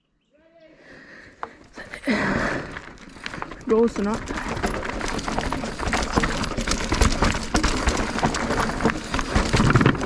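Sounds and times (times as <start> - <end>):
tyres crunching on rocky dirt: 1.4 - 10.0
bike clattering and rattling: 1.6 - 10.0
heavy bike knocks: 3.7 - 10.0.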